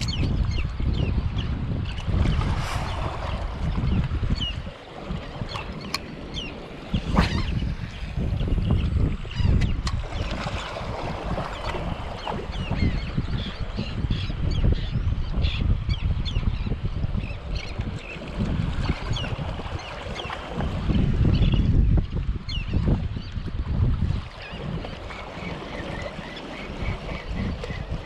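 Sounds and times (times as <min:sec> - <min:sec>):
water lapping and splashing: 0:00.0 - 0:28.0
wind rumbling on microphone: 0:00.0 - 0:28.0.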